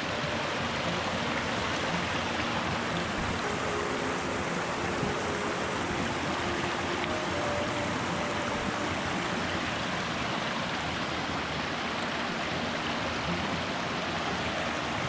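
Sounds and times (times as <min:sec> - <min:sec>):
mountain stream rushing: 0:00.0 - 0:15.0.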